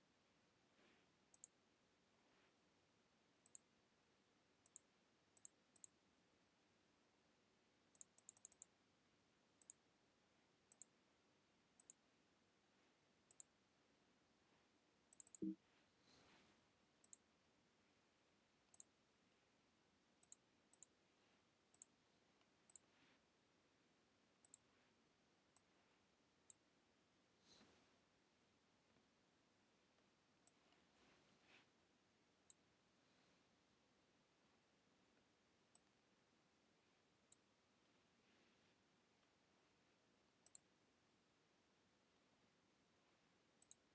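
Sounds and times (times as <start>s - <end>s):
computer mouse clicking: 1.3s - 1.6s, 3.4s - 3.7s, 4.6s - 6.0s, 8.0s - 8.7s, 9.6s - 9.8s, 10.7s - 10.9s, 11.8s - 12.0s, 13.3s - 13.5s, 15.1s - 15.6s, 17.0s - 17.2s, 18.7s - 18.9s, 20.2s - 21.0s, 21.7s - 22.0s, 22.7s - 22.9s, 24.4s - 24.6s, 40.4s - 40.7s, 43.6s - 43.9s.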